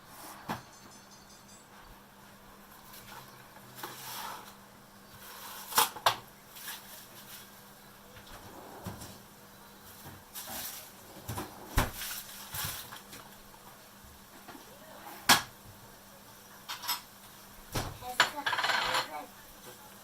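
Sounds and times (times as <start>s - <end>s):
pots and dishes clattering: 0.1s - 2.0s, 10.0s - 13.3s, 16.6s - 19.8s.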